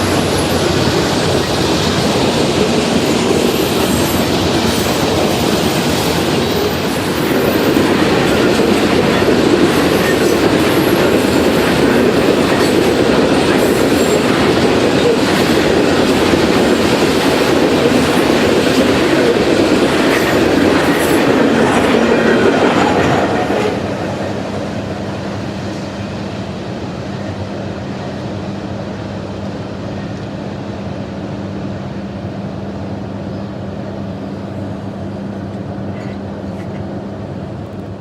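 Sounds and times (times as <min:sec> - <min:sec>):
train wheels clacking: 0:00.0 - 0:24.4
high wheel squeal: 0:03.0 - 0:12.8.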